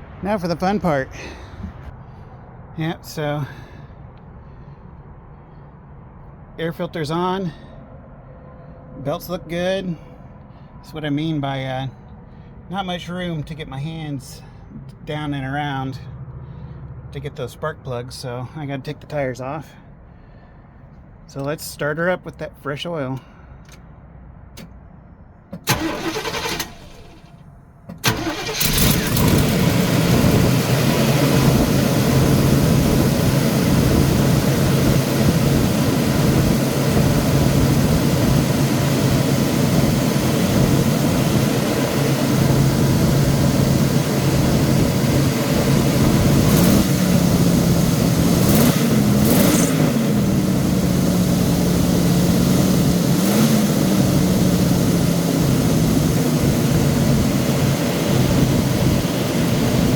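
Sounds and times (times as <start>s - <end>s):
engine starting and idling: 1.1s - 2.3s, 25.5s - 33.5s, 34.3s - 59.9s.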